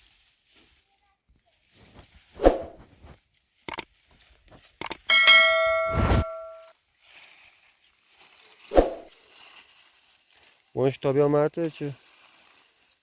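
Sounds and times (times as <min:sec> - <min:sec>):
sharp clicks: 0:04.8 - 0:05.1
metal object ringing when struck: 0:05.0 - 0:06.7.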